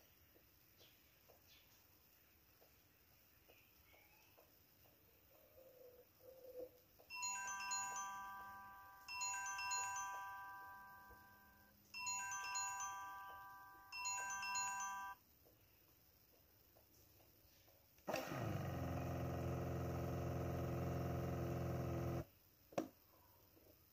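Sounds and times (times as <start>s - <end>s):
phone ringtone melody: 7.1s - 15.2s.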